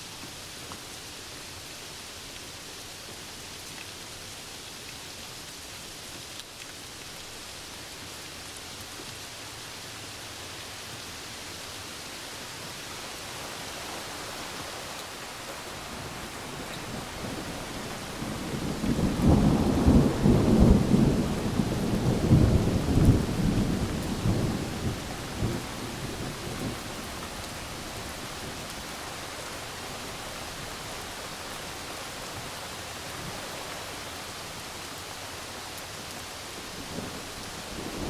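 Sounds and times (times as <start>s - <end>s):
steady rainfall: 0.0s - 38.0s
thunder rumbling: 15.9s - 28.7s.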